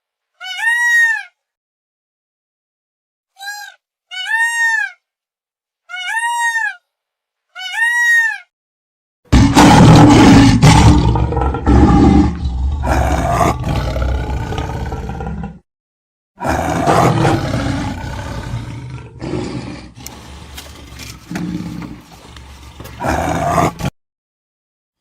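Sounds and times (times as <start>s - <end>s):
cat meowing: 5.9s - 6.8s, 7.6s - 8.5s
big cat roaring: 9.3s - 15.6s, 16.4s - 23.9s.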